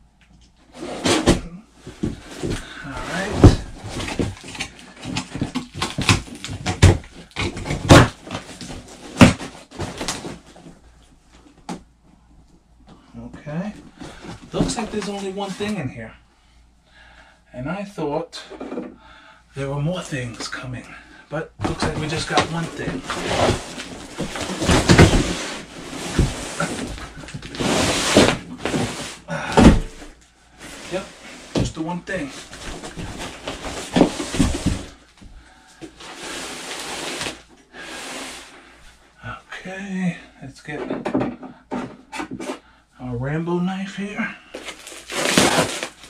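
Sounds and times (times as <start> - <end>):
scrapes rustles and knocks: 0.7 - 11.9, 21.6 - 38.6
cardboard box being opened: 21.6 - 30.0, 44.6 - 46.0
dull thumps: 21.6 - 30.2.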